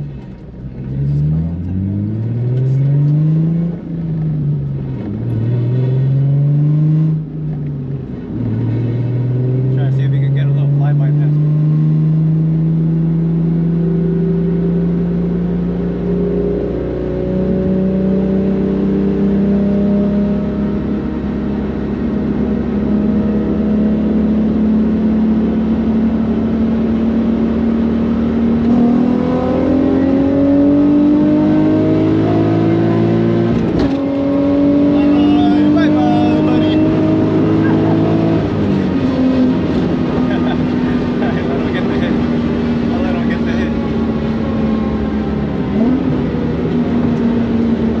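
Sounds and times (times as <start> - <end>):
car engine accelerating: 0.0 - 48.0.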